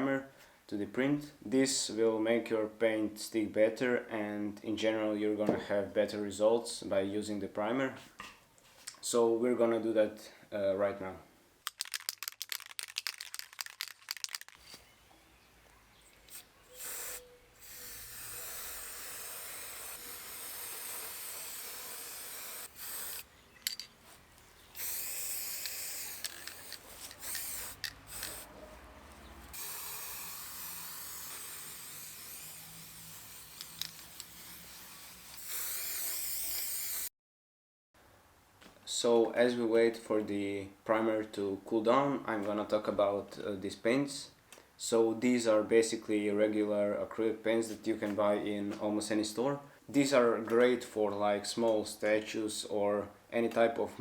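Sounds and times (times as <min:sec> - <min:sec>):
aerosol can clicks: 0:11.7 - 0:14.6, 0:24.8 - 0:28.5, 0:33.5 - 0:34.4
aerosol can spraying: 0:16.3 - 0:23.3, 0:24.8 - 0:37.1.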